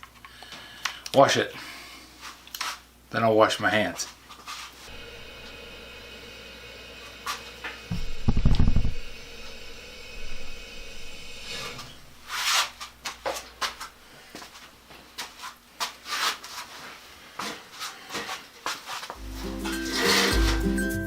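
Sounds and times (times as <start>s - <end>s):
rubbing and scraping strokes: 4.3s - 5.0s, 11.4s - 13.0s, 15.2s - 17.0s, 17.8s - 21.0s
low steady hum: 4.9s - 12.4s
music: 19.2s - 21.0s.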